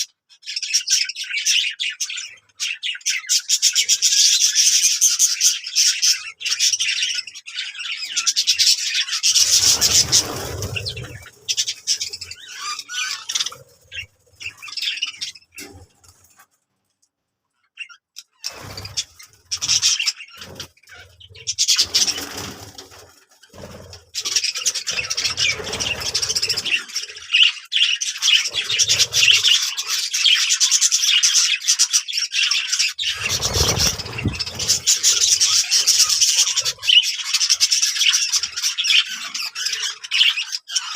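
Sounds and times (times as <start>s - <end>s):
small birds chirping: 0.0s - 40.9s
low rubbing and bumping: 33.2s - 35.4s.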